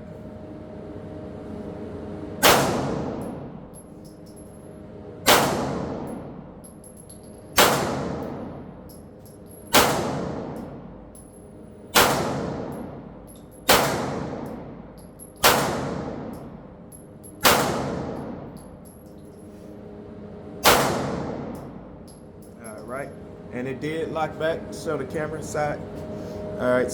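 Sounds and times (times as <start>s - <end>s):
pistol gunshots: 2.4s - 3.1s, 5.3s - 6.1s, 7.6s - 8.3s, 9.7s - 10.6s, 11.9s - 12.7s, 13.6s - 14.5s, 15.4s - 16.3s, 17.4s - 18.4s, 20.6s - 21.5s.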